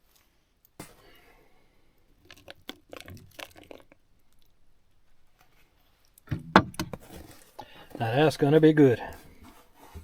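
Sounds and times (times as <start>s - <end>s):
person chewing: 2.2s - 4.5s.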